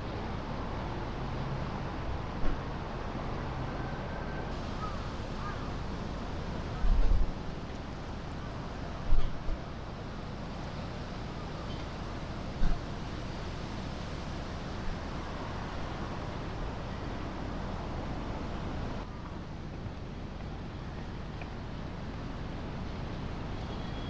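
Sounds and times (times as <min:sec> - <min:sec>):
low wind buffets: 0:04.1 - 0:19.4.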